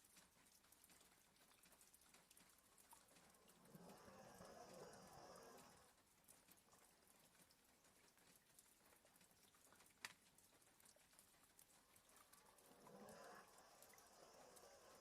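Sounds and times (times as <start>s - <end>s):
light rain tapping: 0.0s - 15.0s
dog snoring softly: 3.0s - 6.0s, 12.1s - 15.0s.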